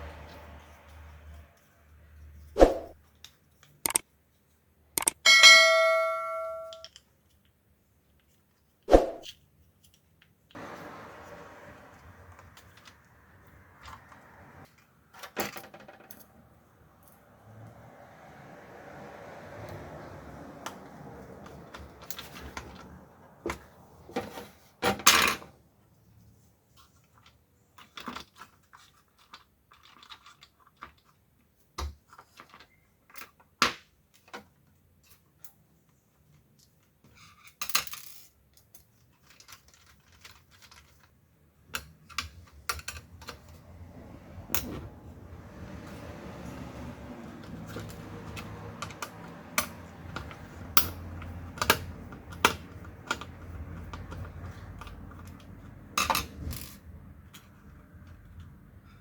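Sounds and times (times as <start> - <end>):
plastic parts clicking and knocking: 3.8 - 4.0, 5.0 - 5.2, 38.6 - 43.5.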